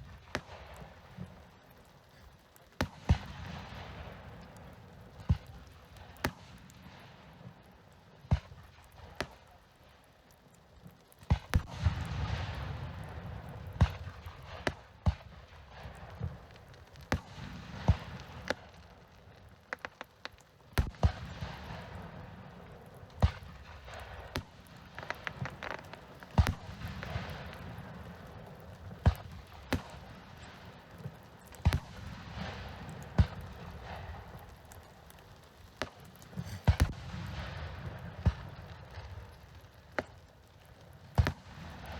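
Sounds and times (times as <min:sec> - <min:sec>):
crackling hiss: 0:00.0 - 0:41.9
firework shells bursting: 0:23.2 - 0:40.2.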